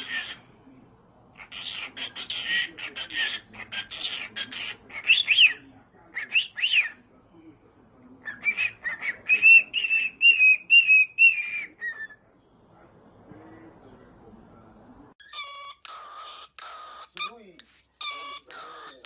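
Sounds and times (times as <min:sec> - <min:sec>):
parrot squeaky calls: 0:00.0 - 0:00.5, 0:01.4 - 0:07.0, 0:08.2 - 0:12.2, 0:15.2 - 0:19.0.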